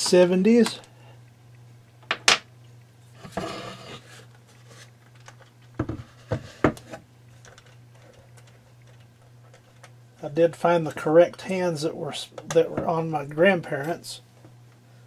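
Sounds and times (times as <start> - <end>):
steady low hum: 0.0 - 15.0
short scraping rub: 3.1 - 4.9.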